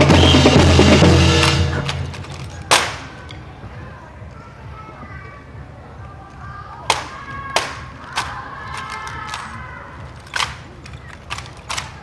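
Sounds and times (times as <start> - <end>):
rifles slapped and knocked: 1.4 - 3.4, 6.9 - 12.0.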